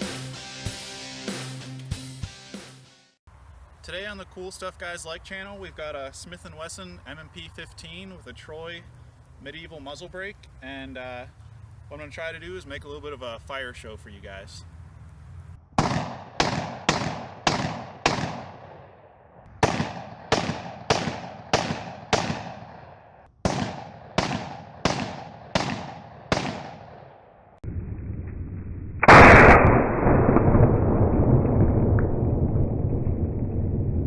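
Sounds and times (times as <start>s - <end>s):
rifle shots echoing: 15.8s - 27.4s
steady rushing rumble: 27.6s - 34.0s.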